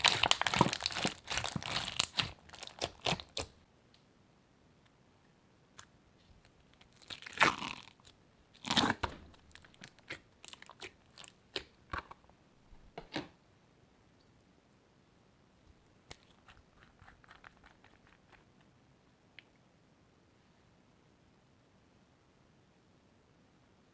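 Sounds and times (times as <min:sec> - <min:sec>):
slime crunching and crackling: 0:00.0 - 0:03.6, 0:06.8 - 0:11.8.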